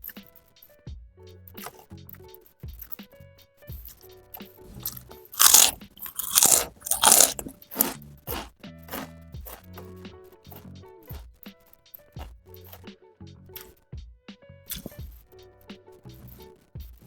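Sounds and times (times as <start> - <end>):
background music: 0.0 - 17.0
crunching fried food: 4.6 - 9.9, 14.7 - 15.0.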